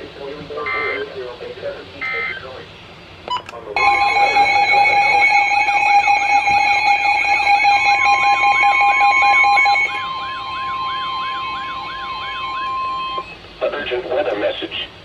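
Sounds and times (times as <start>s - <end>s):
steady high alarm tone: 2.0s - 2.4s, 3.8s - 13.4s
steady alert tones: 3.8s - 13.4s
warbling siren: 3.8s - 13.4s.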